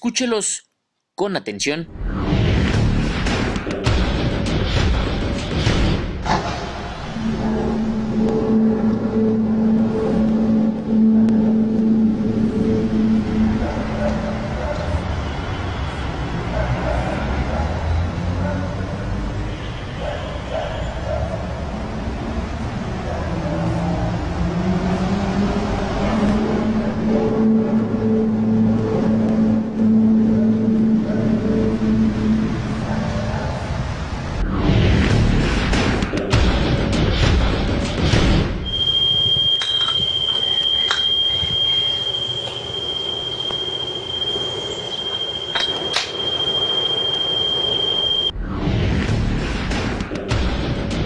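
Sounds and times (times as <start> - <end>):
noisy background: 1.8 - 51.0
rumbling background: 1.9 - 14.8, 21.8 - 44.6, 48.3 - 51.0
low steady drone: 1.9 - 16.4, 21.7 - 38.2.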